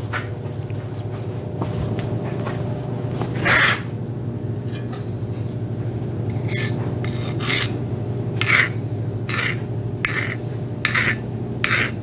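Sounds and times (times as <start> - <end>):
steady low hum: 0.0 - 12.0
file rasping on steel: 6.3 - 12.0.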